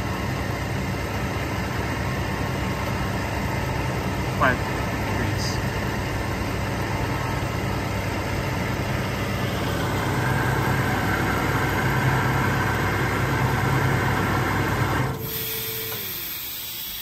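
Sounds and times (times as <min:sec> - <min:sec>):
air compressor humming: 0:00.0 - 0:17.0
high hiss: 0:15.2 - 0:17.0.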